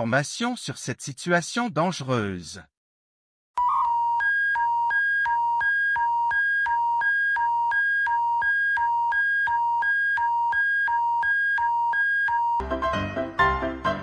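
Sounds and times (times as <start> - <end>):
emergency alert two-tone: 3.6 - 12.6.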